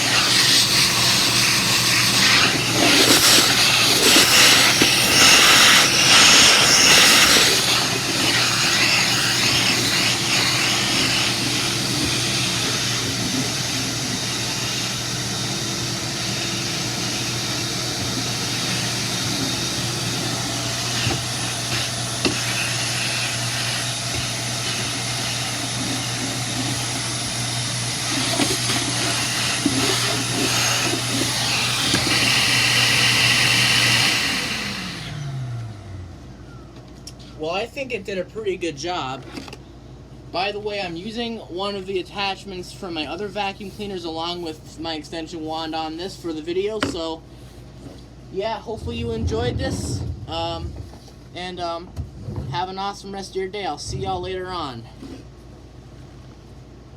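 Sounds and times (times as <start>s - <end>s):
shop vacuum running: 0.0s - 39.6s, 40.2s - 56.9s.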